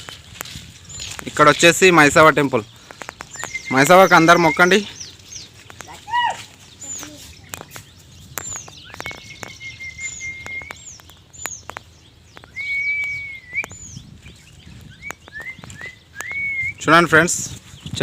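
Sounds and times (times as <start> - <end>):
sharp clicks: 2.8 - 4.6, 7.4 - 13.9
short high bird chirps: 3.3 - 11.7
whistled bird notes: 3.3 - 18.0.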